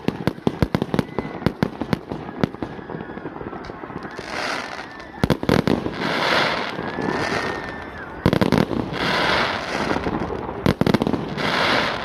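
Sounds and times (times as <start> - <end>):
crackling hiss of fireworks stars: 0.0 - 12.0
fireworks shells bursting with bangs: 0.0 - 12.0.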